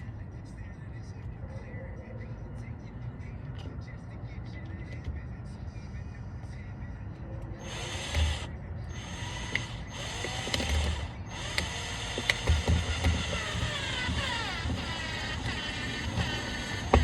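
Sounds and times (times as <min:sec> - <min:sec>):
power drill driving screw: 0:07.6 - 0:17.0.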